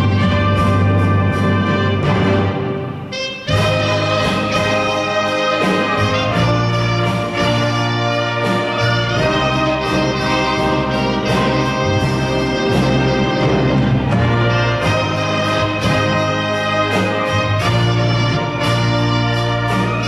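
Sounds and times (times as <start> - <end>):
brass-heavy orchestra playing: 0.0 - 20.0.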